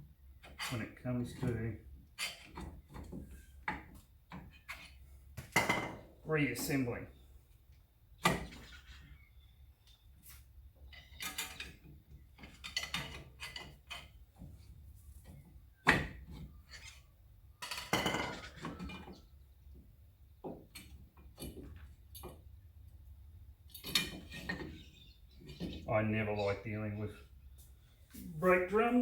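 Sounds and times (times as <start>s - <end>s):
metal tools clinking and knocking: 10.9s - 14.2s, 17.6s - 19.2s.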